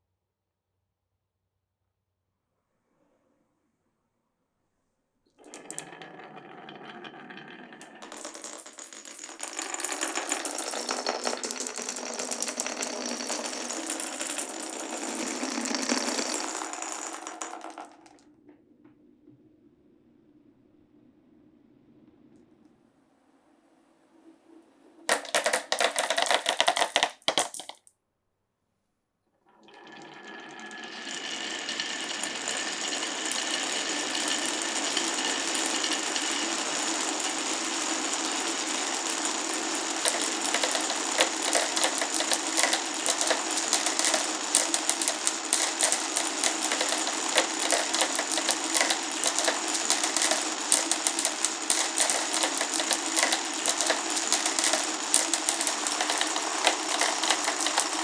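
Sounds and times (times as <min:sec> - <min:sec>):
marbles rolling on wooden run: 0:05.4 - 0:18.2, 0:25.1 - 0:27.9, 0:29.8 - 0:58.0.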